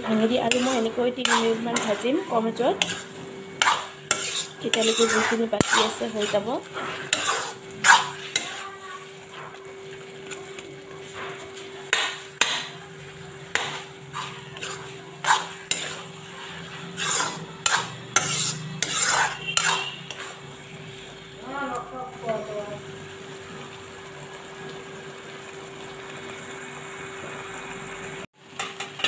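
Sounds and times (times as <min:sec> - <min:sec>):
spatula scraping a pan: 0:00.1 - 0:21.2.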